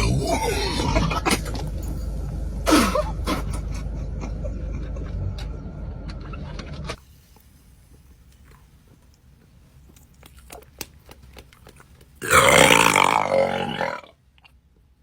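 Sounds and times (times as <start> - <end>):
person burping: 0.0 - 1.6, 12.2 - 14.1
low rumble: 0.0 - 7.0.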